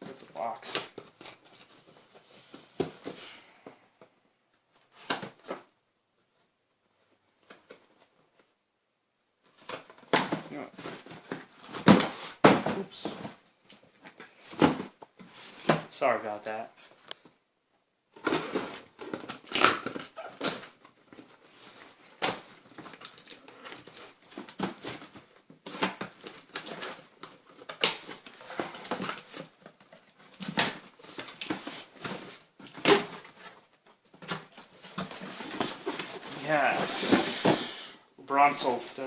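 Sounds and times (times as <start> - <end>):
paper rustling and crinkling: 18.2 - 37.7.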